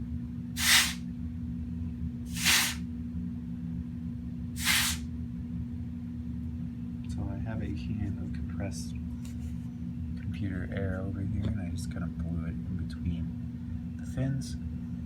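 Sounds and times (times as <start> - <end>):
compressed air bursts: 0.6 - 1.0, 2.3 - 2.8, 4.6 - 5.0.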